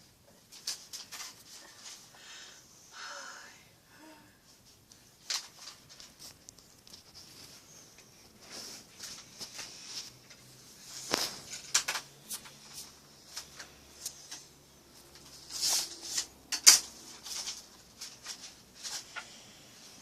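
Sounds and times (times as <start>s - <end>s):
soft rustling: 4.4s - 20.0s.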